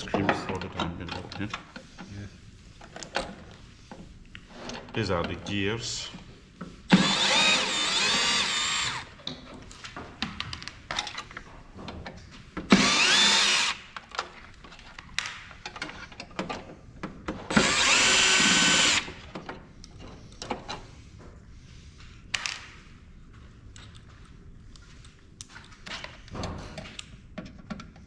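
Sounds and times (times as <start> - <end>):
electric screwdriver motor whine: 6.9 - 9.1, 12.7 - 13.8, 17.5 - 19.1.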